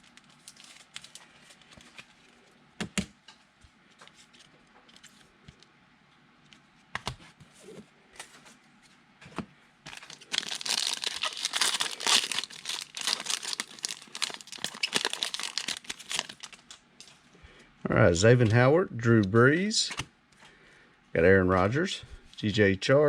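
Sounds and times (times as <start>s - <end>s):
wrappers torn and crinkled: 9.9s - 16.8s.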